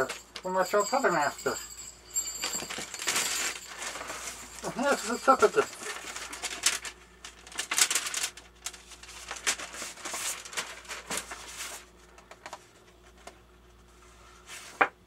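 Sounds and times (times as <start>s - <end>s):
paper rustling and crinkling: 2.2s - 13.4s.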